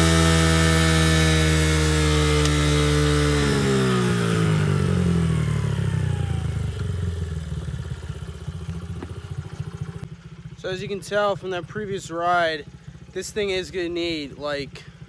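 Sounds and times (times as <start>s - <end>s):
small motorcycle engine revving: 0.0s - 10.6s.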